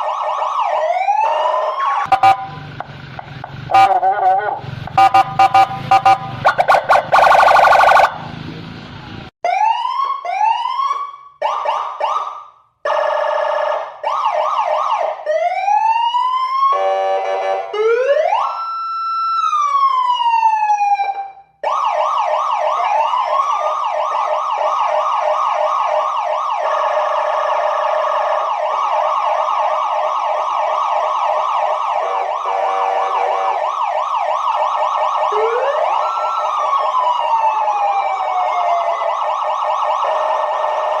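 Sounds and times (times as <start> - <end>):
electronic siren: 0.0 - 2.9, 3.7 - 8.3, 9.4 - 41.0
buzzing horn blast: 4.9 - 6.4.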